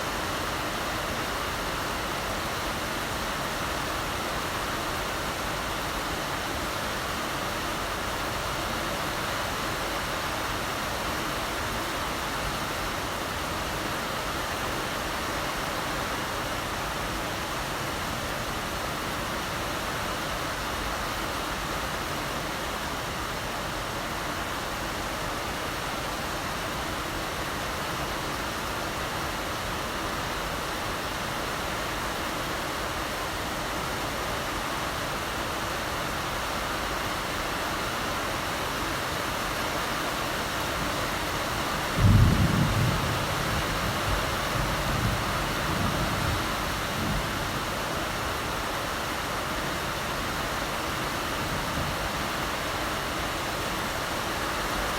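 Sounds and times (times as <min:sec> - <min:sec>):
heavy rain: 0:00.0 - 0:54.9
thunder rumbling: 0:41.9 - 0:47.7.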